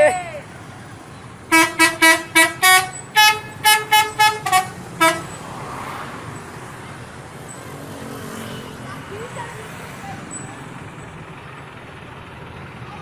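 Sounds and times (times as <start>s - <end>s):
road noise: 0.0s - 13.0s
musical bus horn tune: 1.4s - 5.5s.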